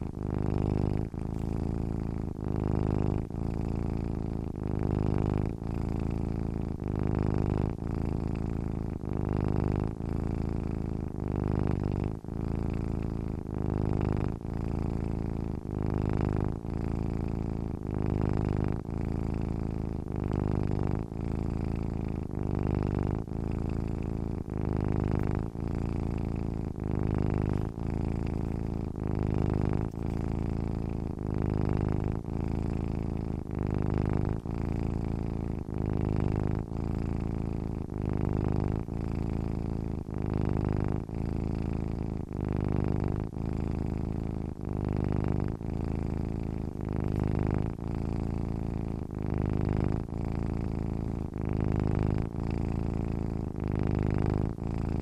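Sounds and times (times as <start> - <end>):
cat purring: 0.0 - 55.0.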